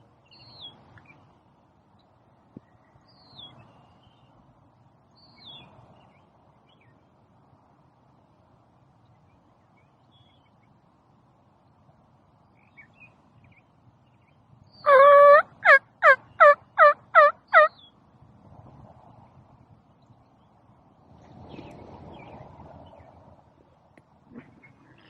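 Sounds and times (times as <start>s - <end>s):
turkey yelps: 14.8s - 17.8s.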